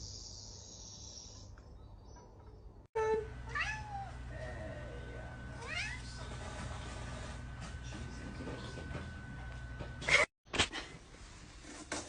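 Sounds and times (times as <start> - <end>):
cat meowing: 3.5 - 4.2.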